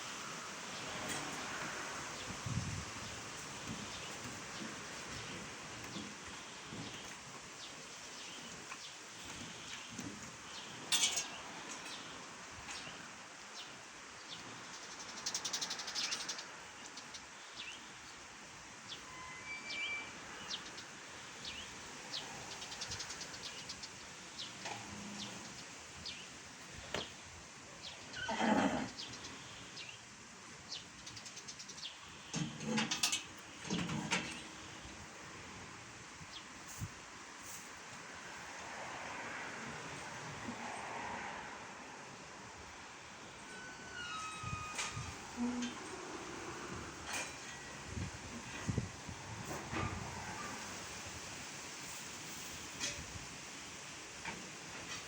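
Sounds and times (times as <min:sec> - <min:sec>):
horse whinnying: 0:28.2 - 0:28.9.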